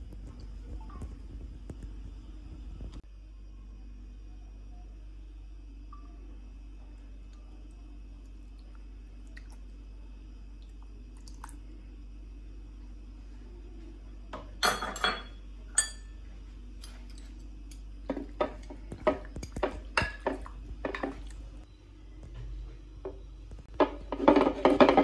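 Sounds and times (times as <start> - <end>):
utensils and dishes clinking: 14.4 - 16.2, 23.8 - 25.0.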